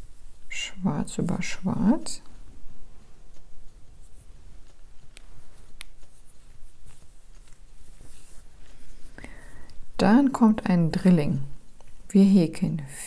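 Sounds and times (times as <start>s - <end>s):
crochet hook pulling yarn: 3.3s - 9.9s.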